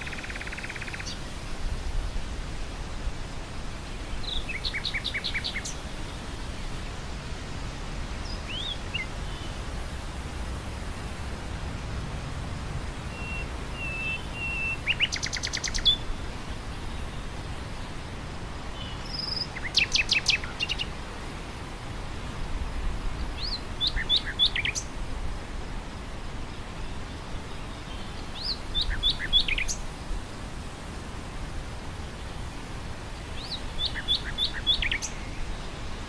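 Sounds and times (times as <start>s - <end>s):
nightingale singing: 0.0s - 1.3s, 4.1s - 5.8s, 8.2s - 9.5s, 13.1s - 16.1s, 18.7s - 20.9s, 23.3s - 24.9s, 26.8s - 29.9s, 33.2s - 35.9s
wind through grass: 0.0s - 36.0s.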